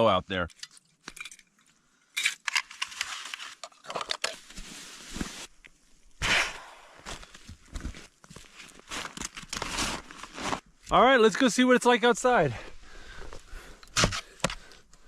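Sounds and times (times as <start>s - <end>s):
rustling and scuffing of person moving: 4.4s - 5.8s, 7.0s - 11.0s.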